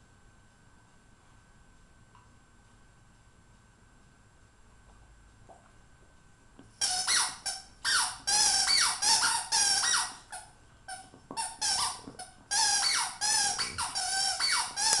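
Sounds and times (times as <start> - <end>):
squeaky dog toy squeaking: 6.8 - 15.0.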